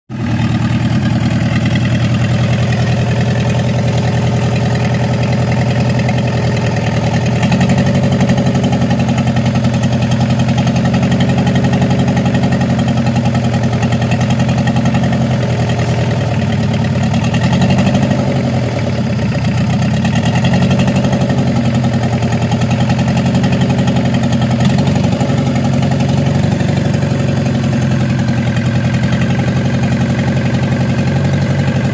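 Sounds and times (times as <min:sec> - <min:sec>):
diesel engine idling: 0:00.1 - 0:31.9.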